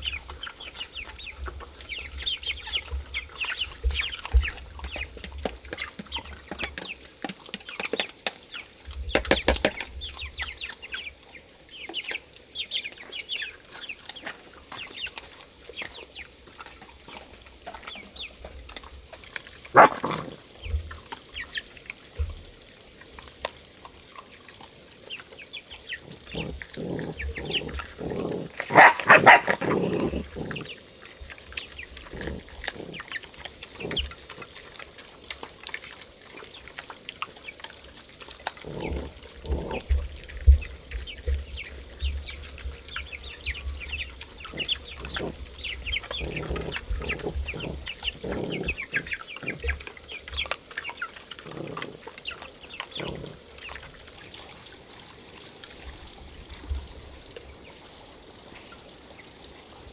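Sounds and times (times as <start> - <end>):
small ticking sounds: 0.0 - 55.9
farm animals calling: 19.4 - 21.8, 25.0 - 54.5.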